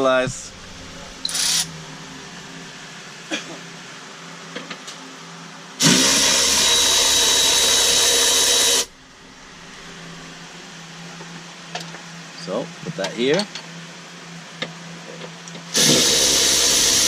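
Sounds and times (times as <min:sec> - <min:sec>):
power driver whining: 0:00.0 - 0:02.8, 0:05.8 - 0:10.6.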